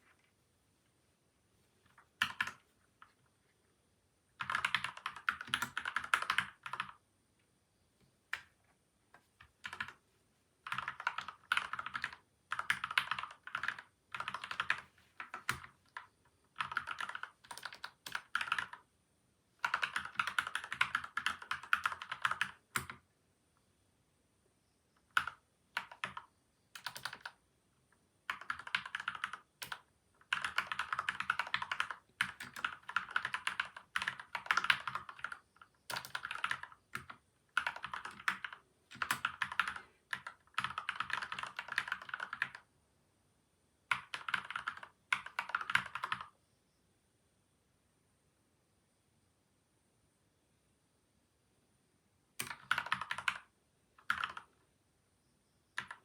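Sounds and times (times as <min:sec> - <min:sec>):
mechanical keyboard typing: 0:02.0 - 0:03.2, 0:04.4 - 0:07.0, 0:09.4 - 0:10.0, 0:10.6 - 0:18.8, 0:19.6 - 0:23.0, 0:25.1 - 0:27.4, 0:28.2 - 0:42.7, 0:43.9 - 0:46.3, 0:52.4 - 0:54.6, 0:55.8 - 0:56.0.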